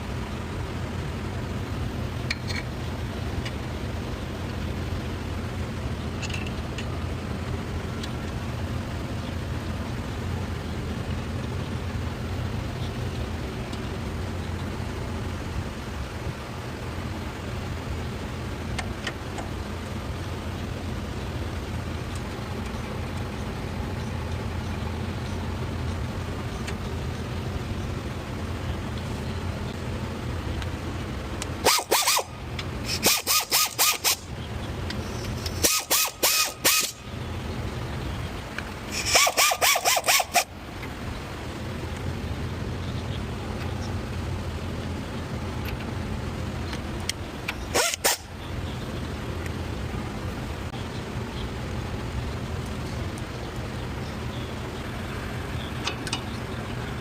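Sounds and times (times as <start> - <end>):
steady low hum: 0.0 - 57.0
power tool pulsing: 31.6 - 34.2, 35.5 - 37.0, 38.9 - 40.5, 47.7 - 48.3.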